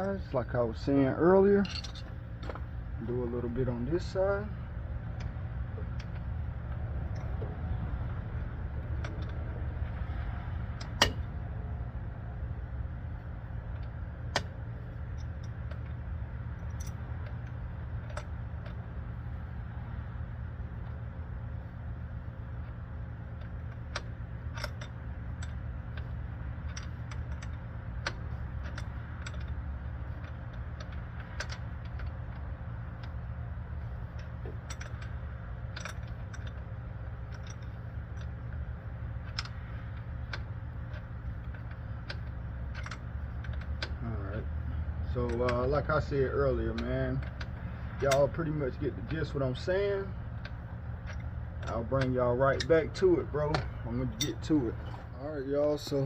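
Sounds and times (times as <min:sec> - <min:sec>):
steady low hum: 0:00.0 - 0:56.0
wrenches clicking on metal fittings: 0:45.0 - 0:55.0.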